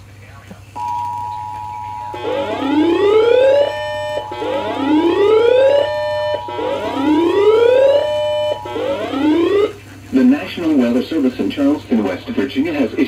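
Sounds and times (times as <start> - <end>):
two-tone attention signal: 0.8 - 9.8
rising siren wail: 2.1 - 9.8.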